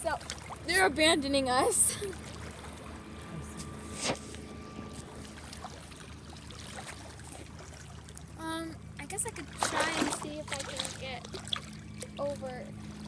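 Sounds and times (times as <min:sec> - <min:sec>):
boat motor running: 0:00.0 - 0:13.0
water trickling: 0:09.1 - 0:13.0.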